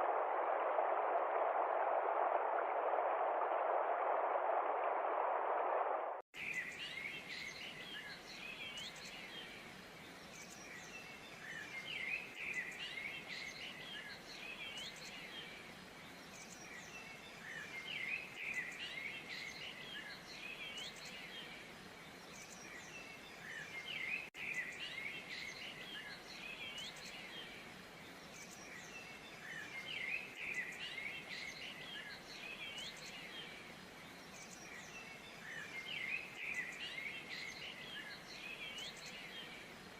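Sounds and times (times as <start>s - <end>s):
rushing sound: 0.0s - 6.2s
faint steady hiss: 0.0s - 39.9s
songbirds chirping and trilling: 6.4s - 39.9s.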